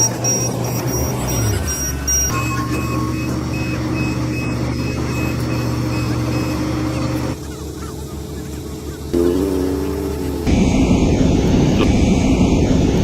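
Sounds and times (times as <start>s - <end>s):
reversing alarm beeping: 0.0s - 7.4s
diesel engine running: 0.0s - 13.0s.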